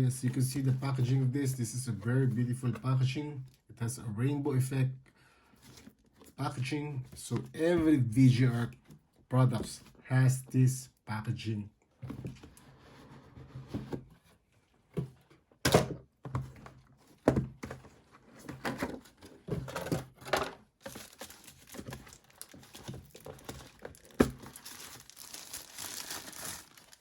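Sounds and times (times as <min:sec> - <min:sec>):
packaging knocks and thumps: 0:15.0 - 0:27.0
packaging rustling: 0:20.8 - 0:27.0.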